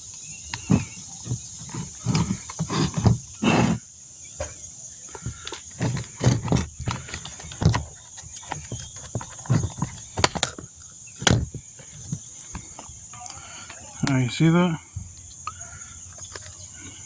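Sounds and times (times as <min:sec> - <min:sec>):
heavy breathing: 0:01.8 - 0:07.7, 0:12.3 - 0:13.9, 0:14.8 - 0:17.0.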